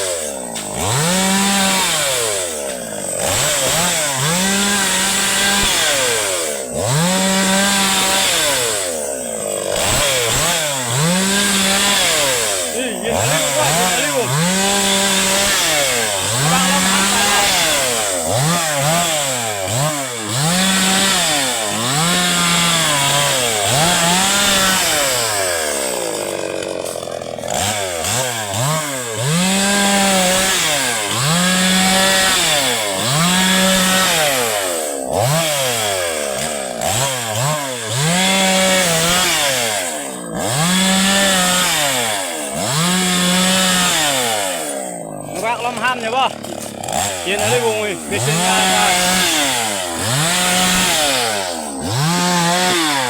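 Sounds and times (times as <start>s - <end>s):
chainsaw engine revving: 0.0s - 53.0s.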